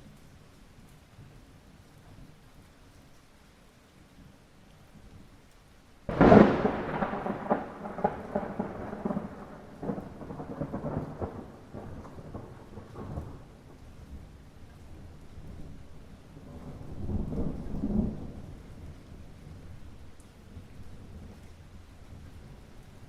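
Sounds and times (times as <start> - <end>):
light rain: 0.0 - 23.0
thunder rolling and crackling: 6.1 - 22.8.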